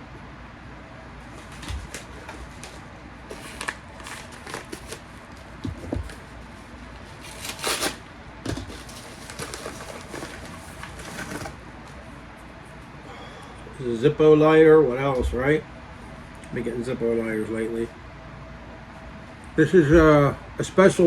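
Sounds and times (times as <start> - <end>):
paper and cardboard rustling: 1.3 - 11.6.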